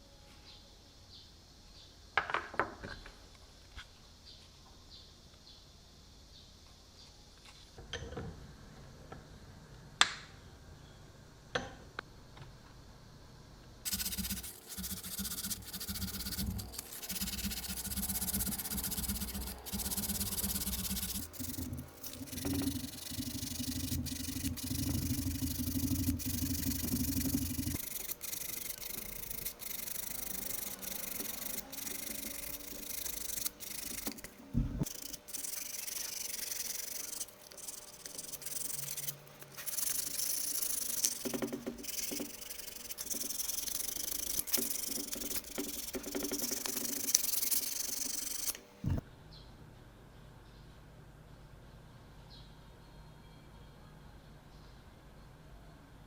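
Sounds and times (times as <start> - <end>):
abrasive sanding: 13.9 - 48.6.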